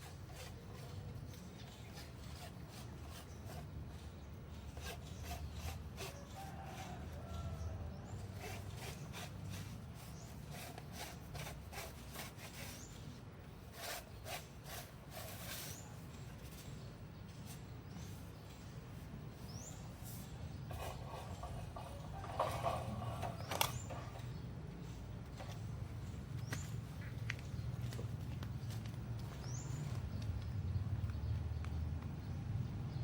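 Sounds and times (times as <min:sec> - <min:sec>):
rubbing and scraping with clicks: 0:00.0 - 0:18.6, 0:19.4 - 0:24.4.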